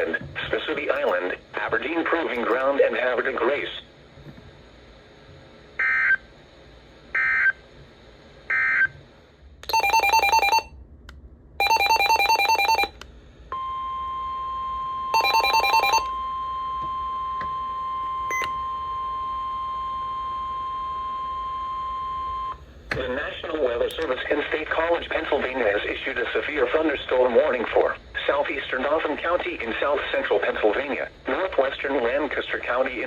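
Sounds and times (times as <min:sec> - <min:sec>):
warning alarm tone: 0:09.7 - 0:10.7, 0:11.6 - 0:13.0, 0:13.6 - 0:22.6.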